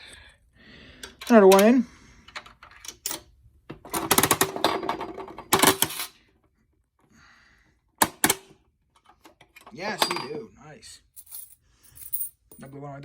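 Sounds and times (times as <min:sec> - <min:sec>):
vending machine crank clicking: 0:03.9 - 0:06.1.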